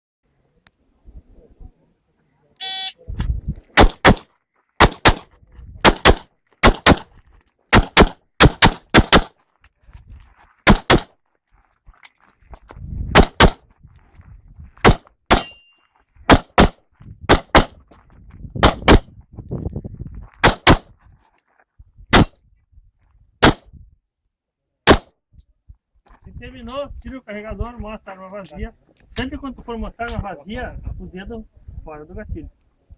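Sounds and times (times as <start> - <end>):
pistol shots in quick pairs: 3.8 - 7.1, 7.7 - 9.4, 10.7 - 11.1, 13.1 - 13.6, 14.8 - 15.6, 16.3 - 17.8, 18.6 - 19.1, 20.4 - 20.9, 22.1 - 22.4, 23.4 - 23.6, 24.8 - 25.1.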